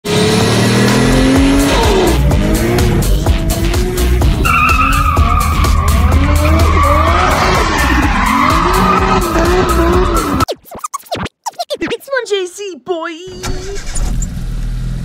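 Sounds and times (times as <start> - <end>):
turbocharged engine revving: 0.0 - 10.4.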